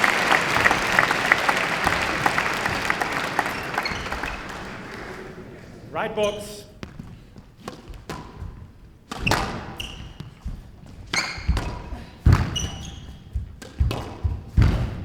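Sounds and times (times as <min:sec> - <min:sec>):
court shoes squeaking: 0:00.0 - 0:14.8
squash ball hitting rackets and walls: 0:06.8 - 0:15.0.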